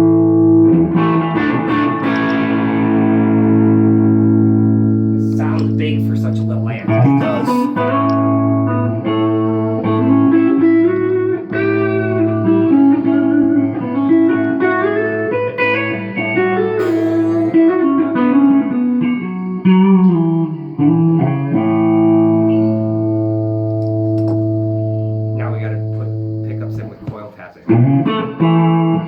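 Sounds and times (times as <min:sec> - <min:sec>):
electric guitar playing: 0:00.0 - 0:29.0.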